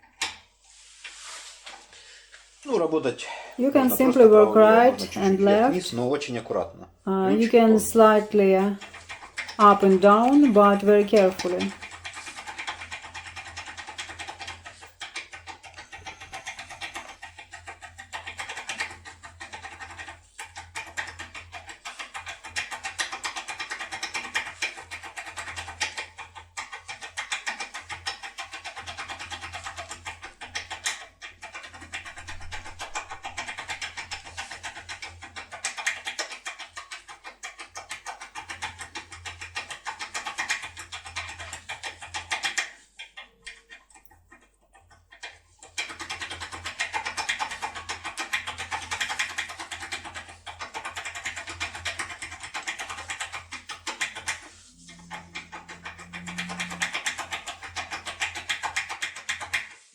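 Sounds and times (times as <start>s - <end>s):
lock-pick scratching in lock: 26.6s - 43.8s
low hum: 54.5s - 58.0s.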